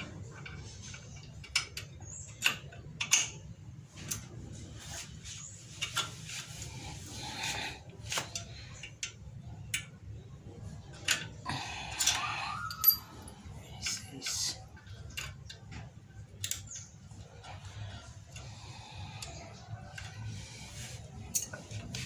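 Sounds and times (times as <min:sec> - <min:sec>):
metallic clicks and clinks of parts: 0:00.2 - 0:04.3, 0:10.9 - 0:14.4, 0:15.1 - 0:17.6, 0:21.2 - 0:22.0.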